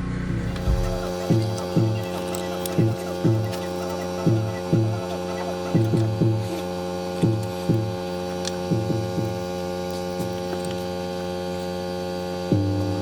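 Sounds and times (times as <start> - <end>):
short low notes: 0.0 - 1.2
steady electrical hum: 0.0 - 13.0.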